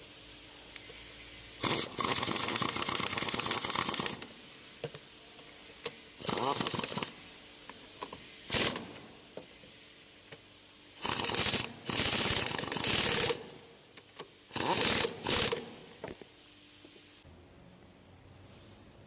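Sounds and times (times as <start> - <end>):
ratchet wrench clicking: 14.5 - 15.6.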